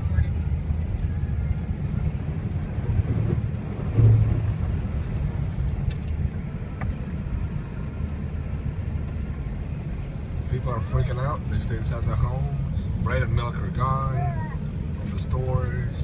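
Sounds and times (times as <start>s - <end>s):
low hum: 0.0s - 10.2s
car driving rumble inside cabin: 0.0s - 16.0s.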